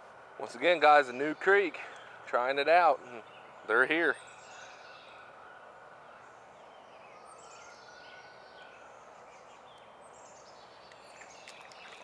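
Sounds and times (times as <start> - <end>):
bird singing faintly: 0.4 - 12.0
flowing creek water: 10.6 - 12.0.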